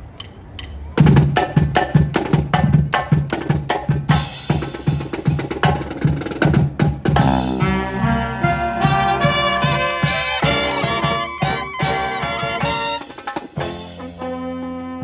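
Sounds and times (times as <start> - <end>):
snare and bass drums cadence: 0.1 - 14.6
drumstick clicks: 0.2 - 0.8
brass instruments: 7.2 - 15.0.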